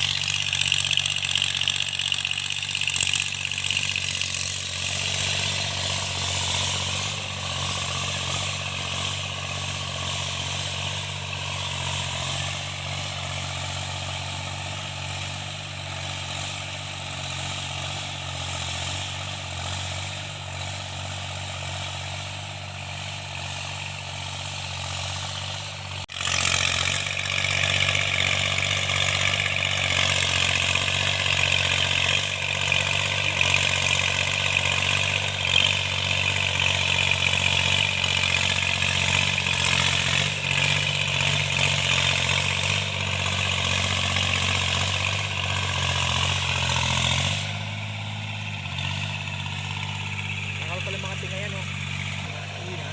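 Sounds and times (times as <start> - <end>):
high rattle: 0.0 - 9.3
tractor engine running: 0.0 - 52.9.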